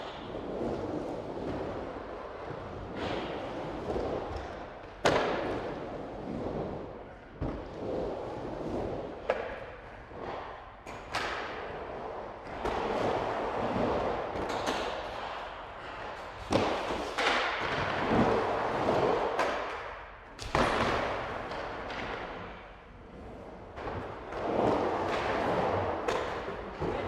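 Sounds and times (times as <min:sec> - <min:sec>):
skateboard wheels rolling on pavement: 0:00.0 - 0:10.2, 0:10.8 - 0:27.0
skateboard striking the ground: 0:14.3 - 0:15.4, 0:16.4 - 0:22.6.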